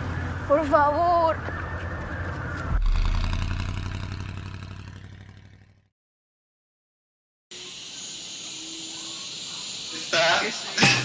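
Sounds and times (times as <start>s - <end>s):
deep pulsing bass tone: 2.6s - 5.8s
steady hiss: 7.6s - 11.0s.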